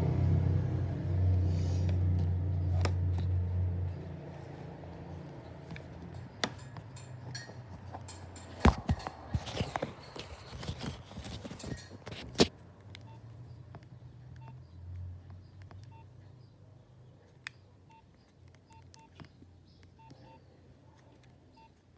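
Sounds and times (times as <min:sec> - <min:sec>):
soft phone beeps: 0:14.4 - 0:14.6, 0:15.9 - 0:16.2, 0:17.9 - 0:19.2, 0:19.9 - 0:20.6, 0:21.5 - 0:21.9.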